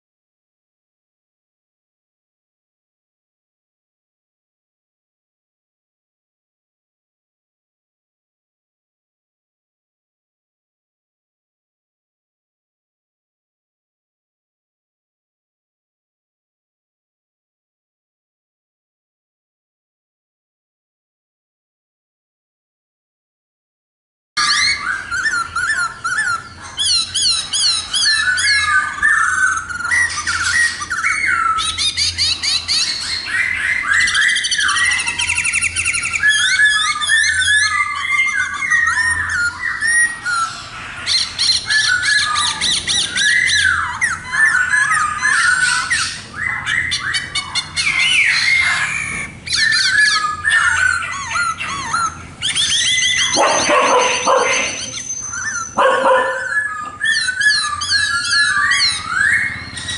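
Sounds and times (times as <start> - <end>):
laughingthrush singing: 24.5 - 59.8.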